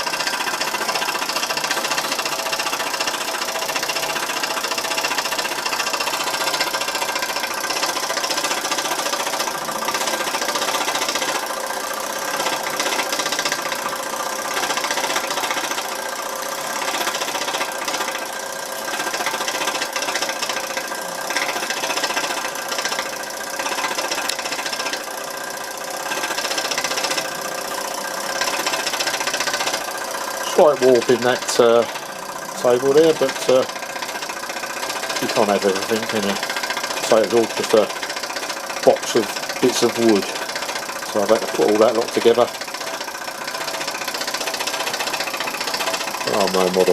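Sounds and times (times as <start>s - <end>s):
small steam engine knocking: 0.0s - 46.9s.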